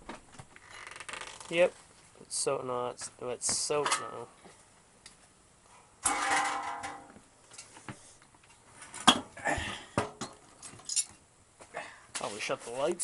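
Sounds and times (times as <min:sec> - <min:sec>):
metal tools clinking: 0:10.7 - 0:11.2.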